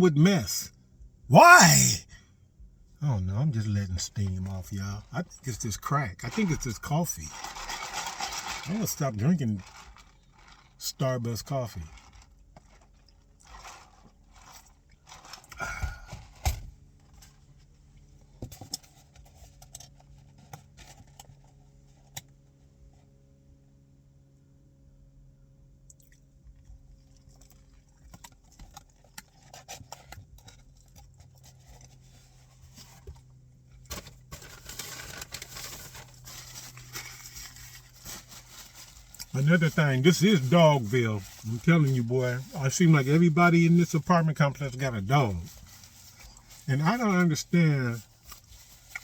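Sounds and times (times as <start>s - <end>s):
small clicks and rustles: 11.9s - 23.2s, 25.9s - 39.3s, 48.0s - 49.0s.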